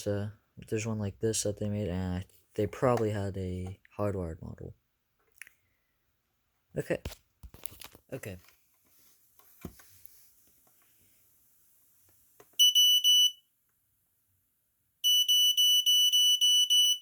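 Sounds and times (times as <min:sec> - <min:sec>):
smoke alarm pulsing tone: 0:12.6 - 0:13.5, 0:15.0 - 0:17.0.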